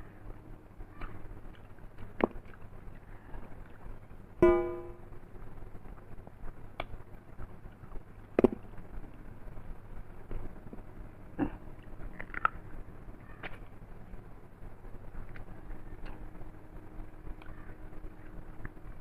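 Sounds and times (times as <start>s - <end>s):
ringing plate clink: 4.4s - 5.0s.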